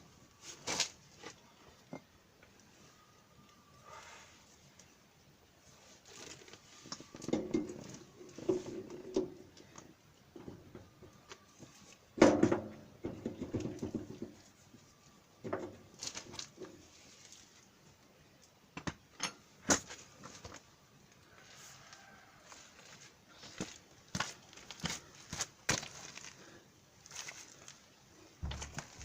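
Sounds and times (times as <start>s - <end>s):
tools and metal parts clattering: 28.4s - 29.0s.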